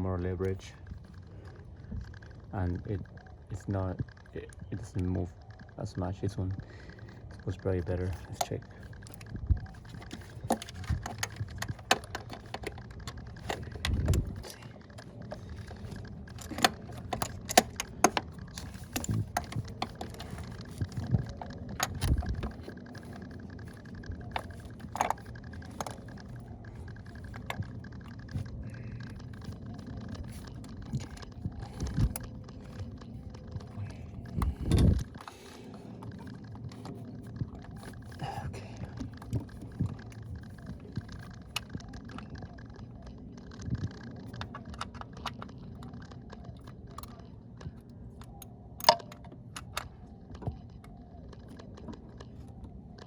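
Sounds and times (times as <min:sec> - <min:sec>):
ratchet clicking: 0:08.1 - 0:35.3.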